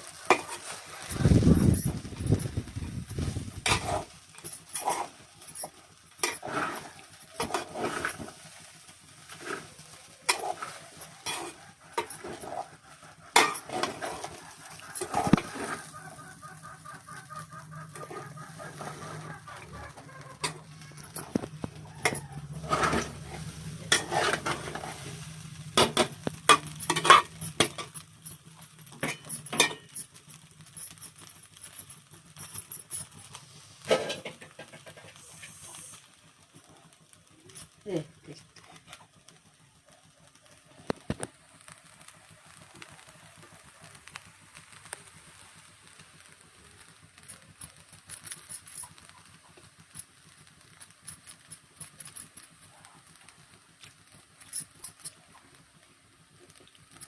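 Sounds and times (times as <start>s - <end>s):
metal utensils clinking on pan: 0.0s - 2.6s, 3.6s - 15.9s, 17.9s - 35.2s.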